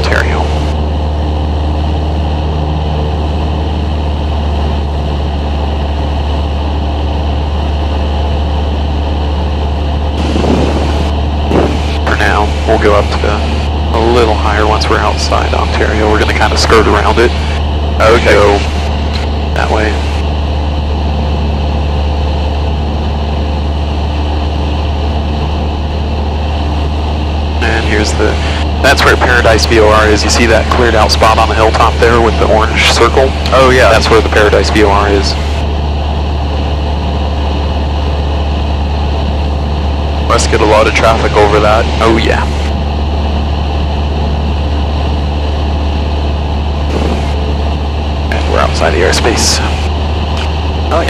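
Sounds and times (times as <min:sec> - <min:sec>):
aircraft engine and propeller drone: 0:00.0 - 0:51.0.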